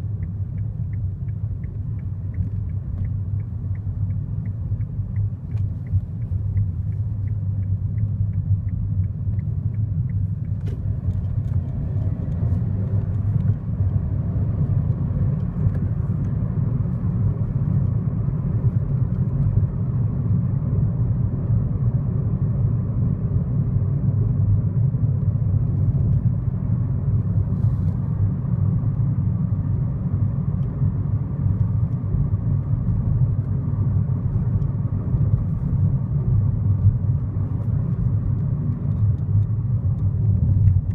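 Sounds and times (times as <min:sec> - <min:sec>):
light regular ticking: 0:00.0 - 0:18.0
car engine and road noise: 0:00.0 - 0:40.9.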